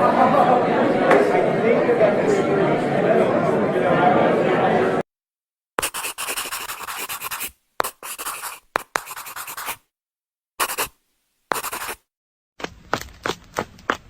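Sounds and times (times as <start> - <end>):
scratchy rasping noise: 5.8 - 9.8, 10.6 - 12.0.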